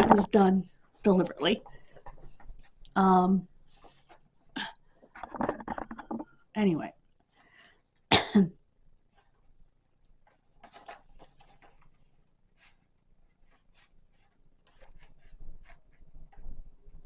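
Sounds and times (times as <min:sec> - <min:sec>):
woman coughing: 0:08.1 - 0:08.6.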